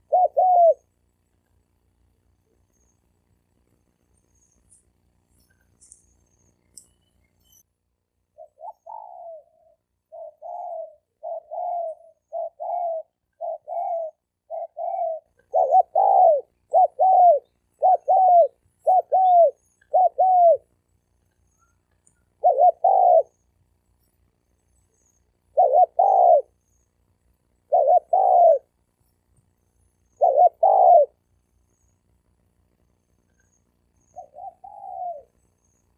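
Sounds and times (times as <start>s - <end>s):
doves cooing: 0.0s - 0.9s, 8.4s - 20.7s, 22.3s - 23.4s, 25.4s - 26.6s, 27.6s - 28.8s, 30.1s - 31.2s, 34.0s - 35.4s.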